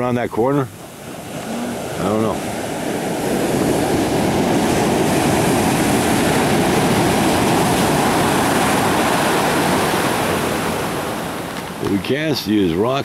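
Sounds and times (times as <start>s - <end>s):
ocean surf roaring: 0.0s - 13.0s.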